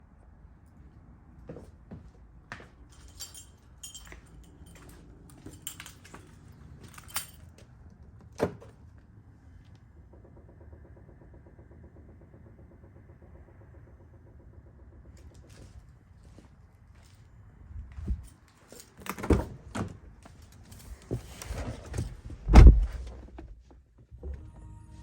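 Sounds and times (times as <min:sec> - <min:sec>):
scattered clicks and knocks: 0:09.7 - 0:15.7.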